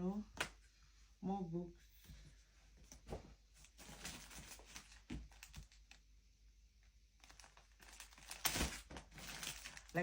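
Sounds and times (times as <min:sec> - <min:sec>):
packaging rustling: 0:03.7 - 0:06.0, 0:07.2 - 0:10.0.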